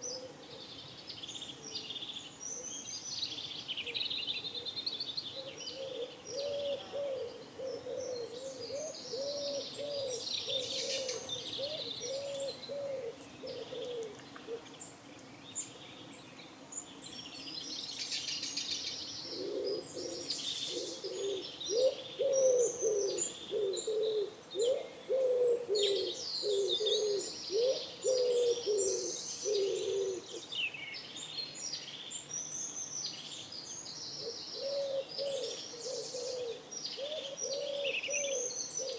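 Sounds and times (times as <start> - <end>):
songbirds chirping: 0.0 - 38.9
pigeons cooing: 5.4 - 14.7, 19.2 - 30.4, 34.2 - 38.9.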